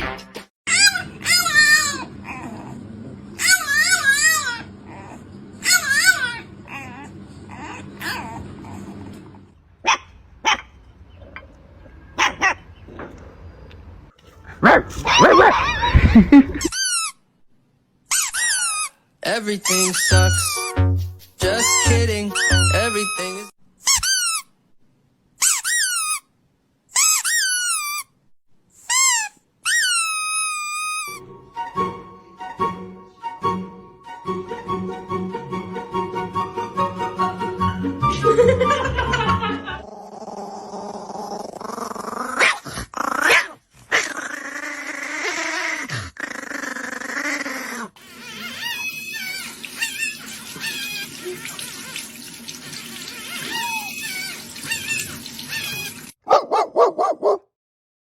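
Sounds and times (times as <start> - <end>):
music: 0.0 - 0.5, 19.9 - 23.5, 31.2 - 39.8
puppy whining: 0.7 - 10.7, 14.3 - 17.1, 28.9 - 31.3, 39.8 - 52.1, 53.0 - 56.2.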